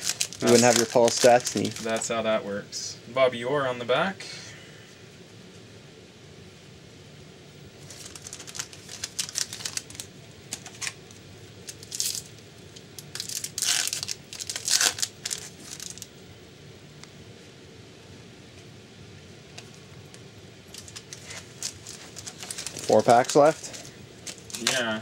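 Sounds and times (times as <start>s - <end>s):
foil wrapper crackling: 0.0s - 2.1s, 7.8s - 16.1s, 20.7s - 25.0s.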